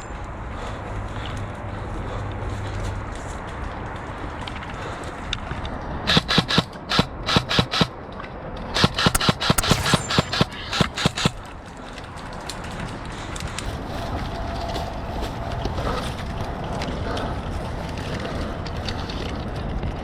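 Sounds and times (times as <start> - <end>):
airsoft gun shots: 8.8 - 11.4.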